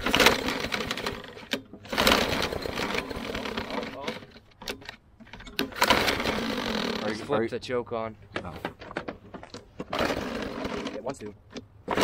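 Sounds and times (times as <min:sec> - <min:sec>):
small engine sputtering: 0:00.0 - 0:04.4, 0:05.6 - 0:07.3, 0:09.8 - 0:11.2
recoil starter pulled: 0:00.0 - 0:07.4, 0:08.3 - 0:12.0.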